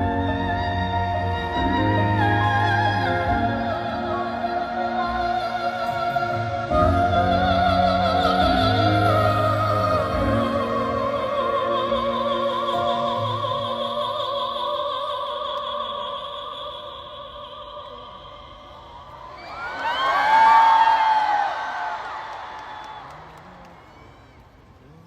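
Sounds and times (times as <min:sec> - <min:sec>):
person singing wordless vocalise: 0:00.0 - 0:19.0.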